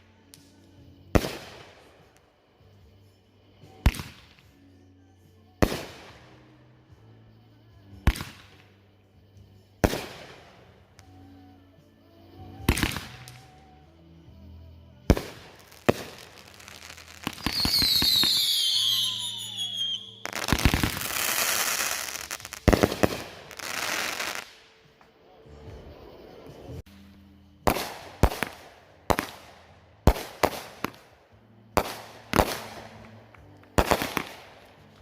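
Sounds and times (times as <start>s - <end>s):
dense firework crackling: 15.1s - 24.7s, 31.8s - 35.0s
whistles falling in pitch: 17.3s - 20.5s.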